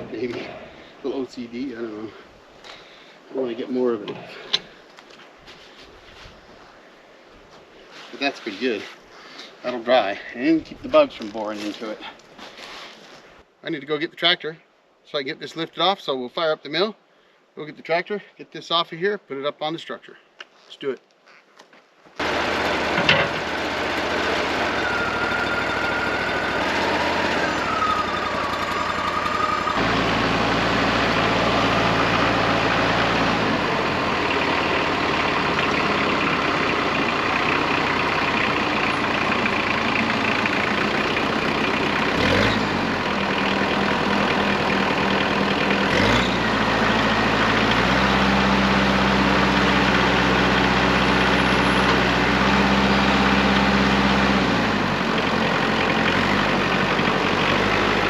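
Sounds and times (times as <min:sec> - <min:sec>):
heavy engine idling: 0:22.2 - 0:58.0.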